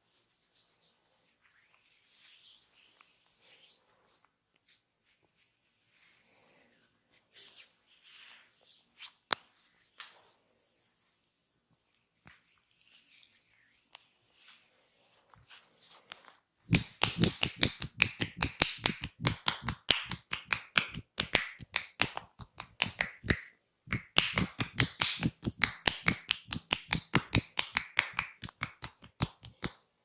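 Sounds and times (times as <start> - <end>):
massage hand slaps: 16.7 - 29.8.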